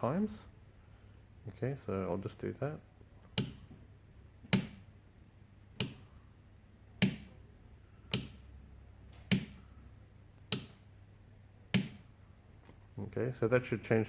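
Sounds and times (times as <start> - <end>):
power switch clicking: 3.3 - 3.7, 5.8 - 6.1, 7.0 - 7.4, 8.1 - 8.5, 9.2 - 9.6, 11.7 - 12.1.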